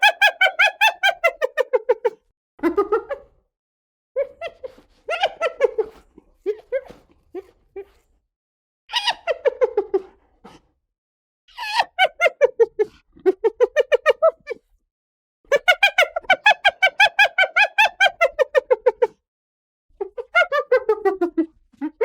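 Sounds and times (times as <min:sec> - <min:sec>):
hyena giggling: 0:04.2 - 0:08.1, 0:08.9 - 0:10.7, 0:11.6 - 0:14.6.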